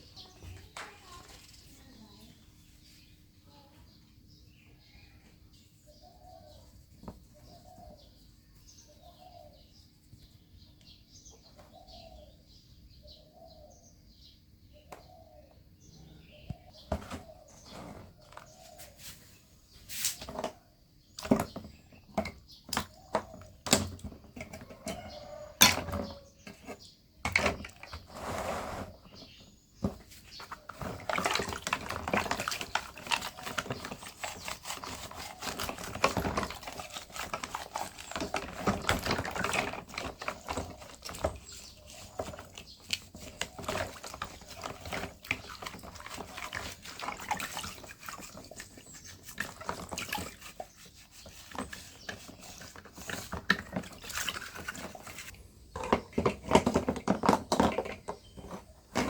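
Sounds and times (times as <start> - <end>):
rough metal scraping: 27.9 - 29.2.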